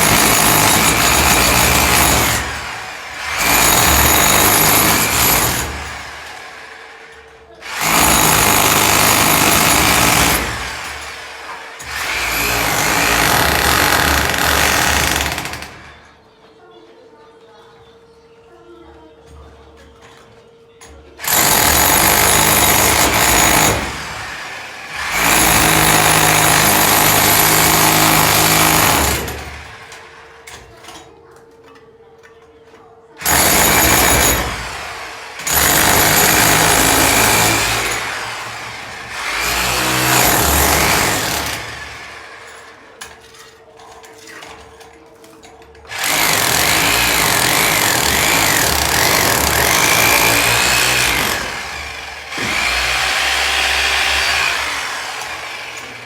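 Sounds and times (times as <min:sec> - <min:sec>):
power tool whining: 0:00.0 - 0:15.9, 0:21.2 - 0:30.1, 0:33.2 - 0:42.8, 0:45.9 - 0:56.0.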